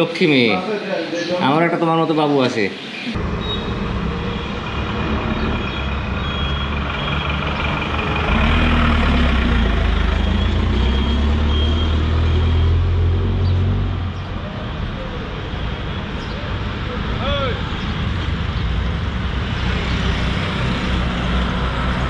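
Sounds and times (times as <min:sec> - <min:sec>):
road traffic: 0:00.0 - 0:22.0
heavy vehicle engine running: 0:03.2 - 0:12.9.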